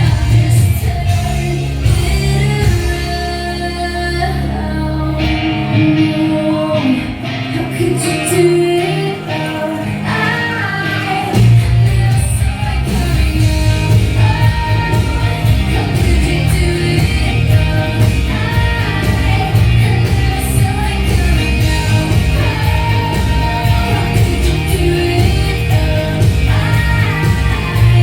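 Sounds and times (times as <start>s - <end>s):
heavy bass beat: 0.0s - 3.3s, 11.4s - 28.0s
song with singing: 0.0s - 28.0s.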